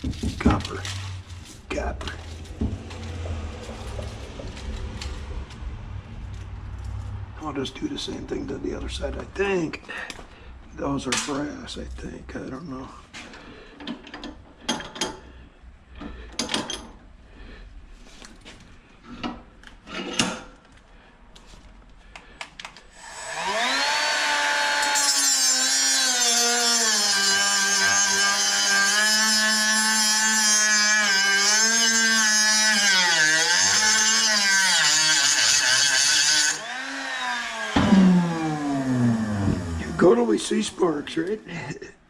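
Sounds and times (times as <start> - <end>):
power tool cutting metal: 23.0 - 40.3.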